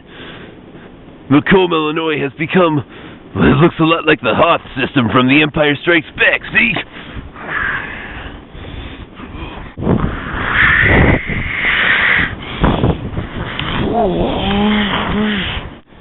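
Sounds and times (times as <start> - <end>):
wind buffeting microphone: 0.0 - 16.0
wavering voice-like tone: 13.8 - 15.6.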